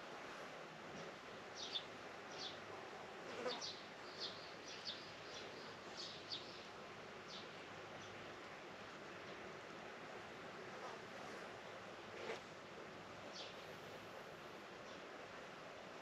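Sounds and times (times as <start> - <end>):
faint outdoor hiss: 0.0 - 16.0
small birds chirping: 1.6 - 2.6, 3.4 - 6.7.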